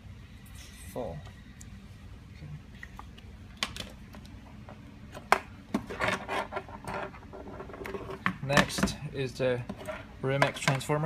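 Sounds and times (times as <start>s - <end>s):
cables rubbing and scraping: 5.8s - 8.2s.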